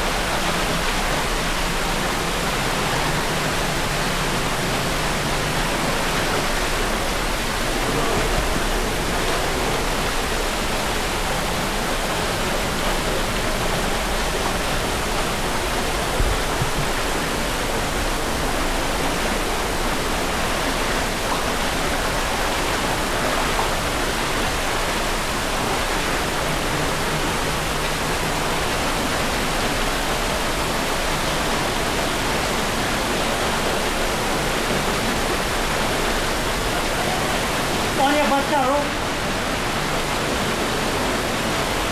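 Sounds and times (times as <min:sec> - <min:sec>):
waterfall rushing: 0:00.0 - 0:41.9.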